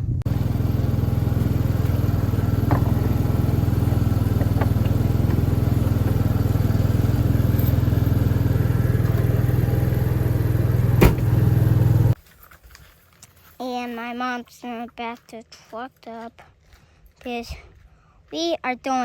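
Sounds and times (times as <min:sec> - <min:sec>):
engine idling: 0:00.0 - 0:12.2.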